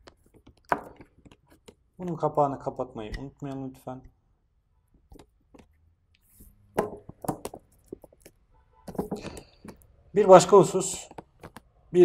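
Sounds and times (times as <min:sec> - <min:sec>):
small objects clicking and knocking: 0:00.0 - 0:01.9, 0:06.4 - 0:09.9, 0:10.7 - 0:11.7.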